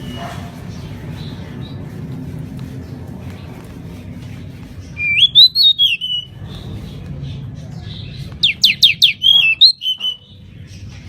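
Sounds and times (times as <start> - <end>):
bird singing whistled phrases: 5.0 - 6.4, 8.4 - 10.4.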